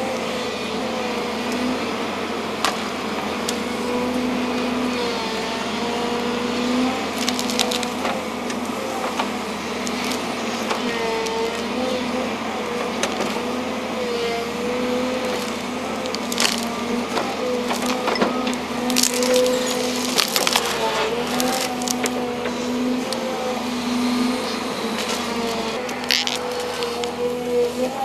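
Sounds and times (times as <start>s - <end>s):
diesel excavator engine running: 0.0s - 28.0s
tree roots cracking and splintering: 6.2s - 11.6s, 14.5s - 23.2s, 25.0s - 27.2s.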